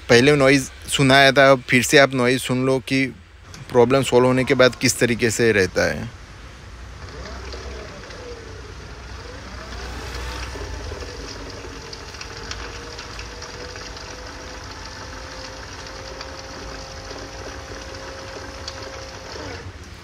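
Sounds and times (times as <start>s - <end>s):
electric scooter motor whine: 6.8s - 20.0s.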